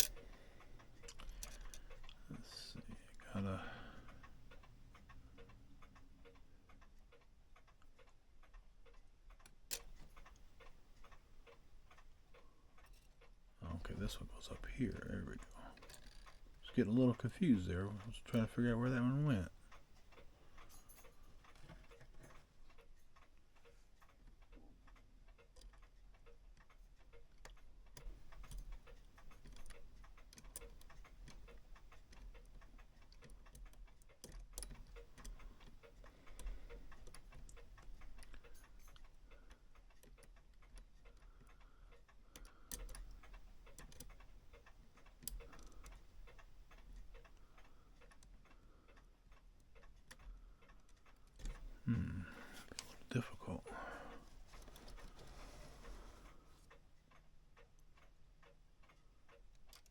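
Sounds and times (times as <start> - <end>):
sharp light clicks: 0.0 - 2.2
clocks ticking: 0.0 - 59.9.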